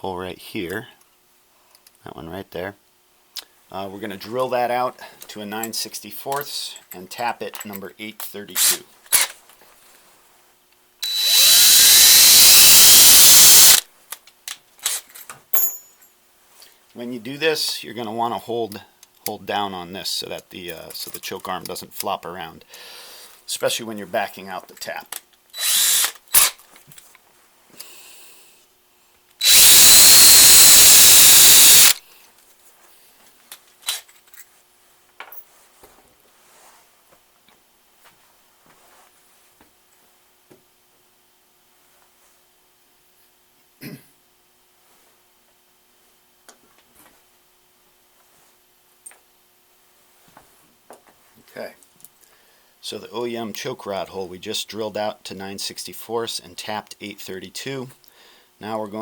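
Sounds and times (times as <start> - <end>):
electric drill drilling: 11.0 - 13.8, 25.6 - 26.5, 29.4 - 32.0.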